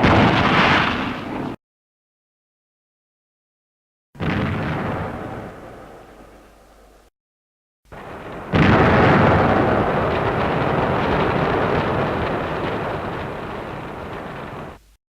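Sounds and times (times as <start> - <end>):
explosion blast: 0.0 - 1.6, 4.2 - 6.5, 7.9 - 14.8.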